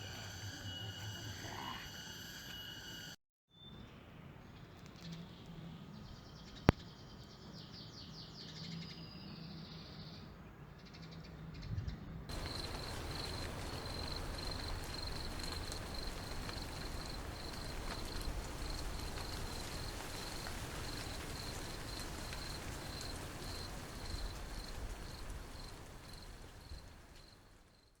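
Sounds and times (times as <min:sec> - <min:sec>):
faint high insect chirps: 0:00.0 - 0:03.2, 0:12.3 - 0:28.0
pulsing high cricket trill: 0:00.0 - 0:03.2, 0:12.3 - 0:24.2
low background rumble: 0:12.3 - 0:25.4.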